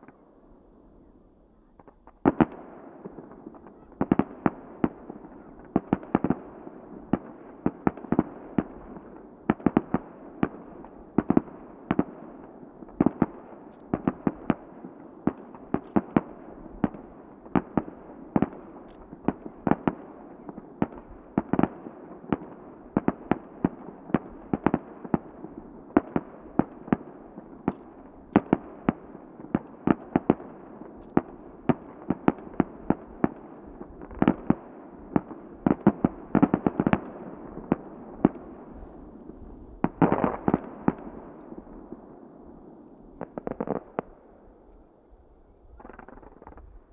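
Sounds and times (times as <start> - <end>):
rumbling haze of fireworks: 0.0 - 46.9
fireworks bangs: 12.8 - 42.0, 43.1 - 44.2, 45.7 - 46.7.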